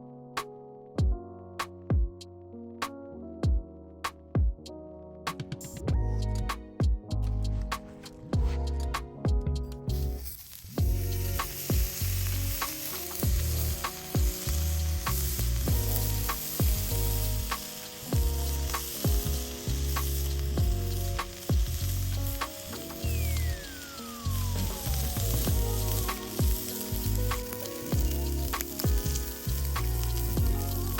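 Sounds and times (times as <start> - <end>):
music with plucked notes and bass: 5.9 - 10.1, 24.3 - 30.9
meat sizzling on a griddle: 9.9 - 30.9.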